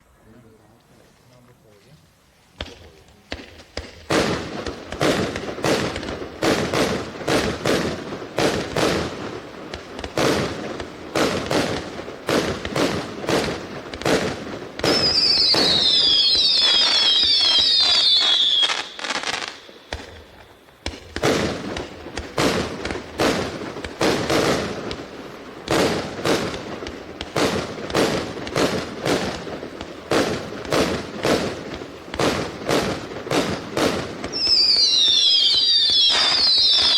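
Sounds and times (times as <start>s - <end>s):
firework shots launching: 2.6s - 36.9s
firework whistles falling in pitch: 14.8s - 20.5s, 34.3s - 36.9s.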